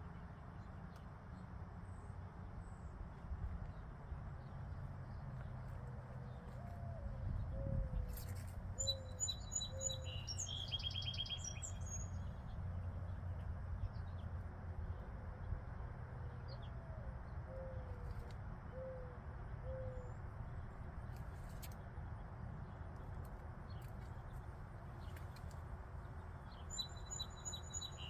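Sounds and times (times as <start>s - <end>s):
songbird chirping and trilling: 6.3s - 13.2s, 25.0s - 28.0s.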